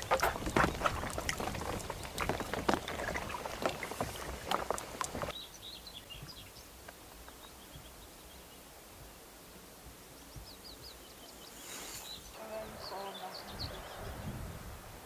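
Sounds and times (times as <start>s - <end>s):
paddle splashes: 0.0s - 5.3s
water slapping around boat: 0.0s - 5.4s
faint high bird chirps: 10.2s - 14.3s.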